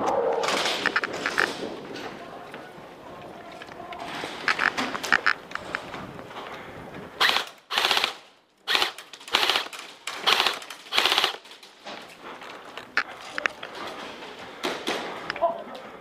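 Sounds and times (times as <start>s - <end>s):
airsoft gun bursts: 7.2s - 11.5s.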